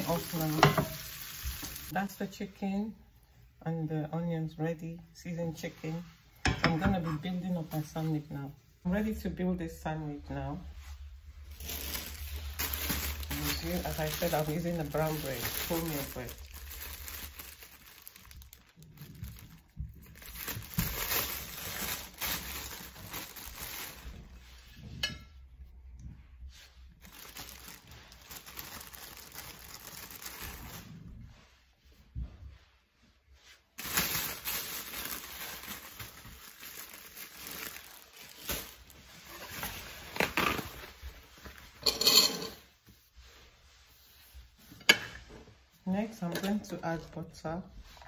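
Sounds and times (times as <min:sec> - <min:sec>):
plastic bag crinkling: 0:00.0 - 0:02.2, 0:11.4 - 0:24.6, 0:27.0 - 0:31.1, 0:33.8 - 0:41.7.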